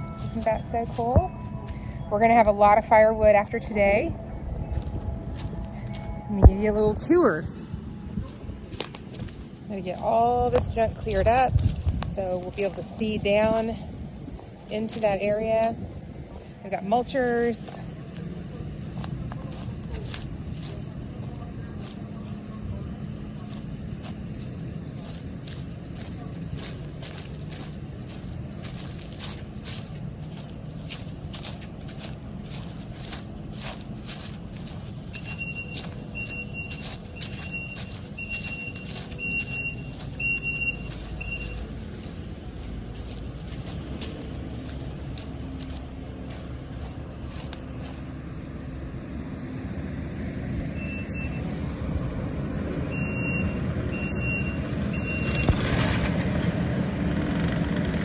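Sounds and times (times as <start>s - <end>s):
backup alarm beeping: 0.0s - 8.2s, 35.0s - 41.8s, 50.7s - 51.6s, 52.9s - 55.7s
diesel engine running: 0.0s - 58.0s.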